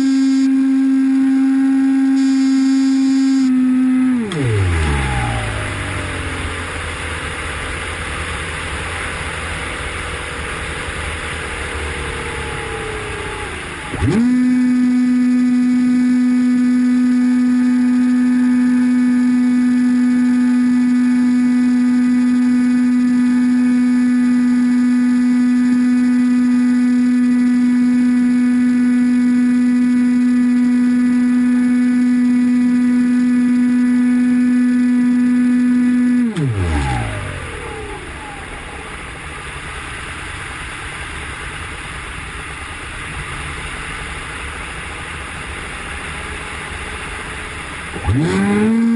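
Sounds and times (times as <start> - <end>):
electric motor and propeller whine: 0.0 - 48.9.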